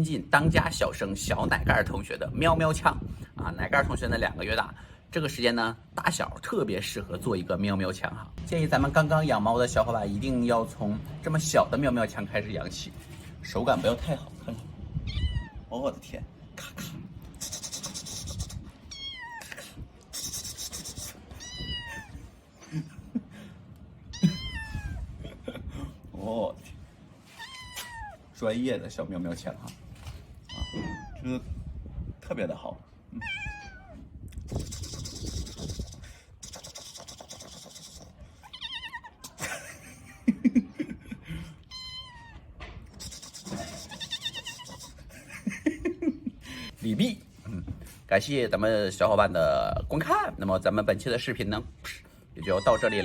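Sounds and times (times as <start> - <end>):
kitten meowing: 15.0 - 15.7, 17.8 - 19.5, 21.2 - 22.2, 24.1 - 25.1, 27.4 - 28.2, 30.4 - 31.2, 33.2 - 34.0, 38.4 - 39.4, 41.7 - 42.5, 43.4 - 45.0, 52.4 - 53.0.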